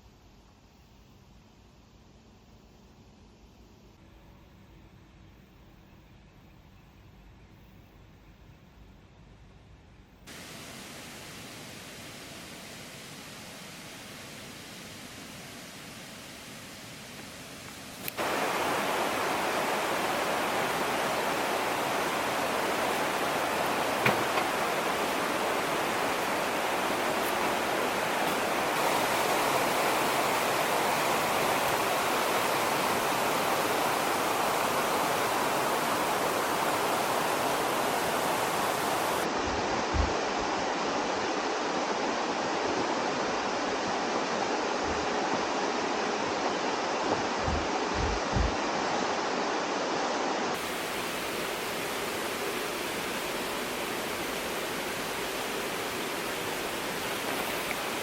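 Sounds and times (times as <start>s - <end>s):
rushing water noise: 10.3s - 58.0s
soft low thumps: 39.4s - 40.4s, 47.1s - 48.7s.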